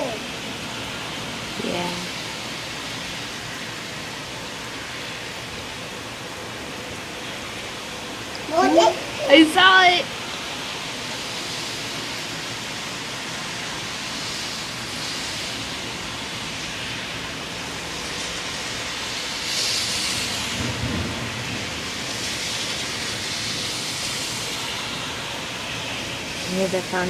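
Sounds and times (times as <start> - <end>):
heavy rain: 0.0 - 27.0
thunder rolling: 20.2 - 25.8.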